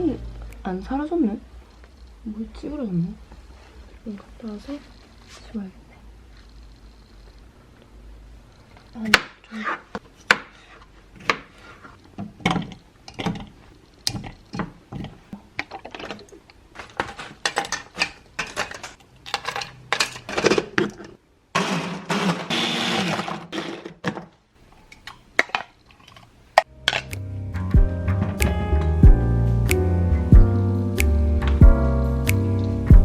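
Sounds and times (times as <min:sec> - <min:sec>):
dishes and utensils clattering: 0:15.0 - 0:21.2.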